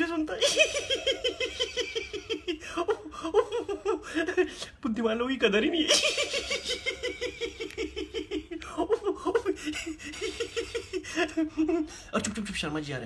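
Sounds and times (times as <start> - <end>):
person laughing: 0.3 - 4.8, 5.7 - 12.1.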